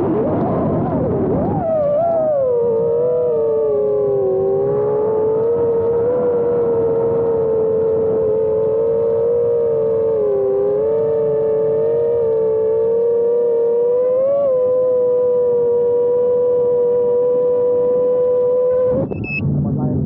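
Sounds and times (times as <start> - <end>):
quadcopter motors whining: 0.0 - 19.2.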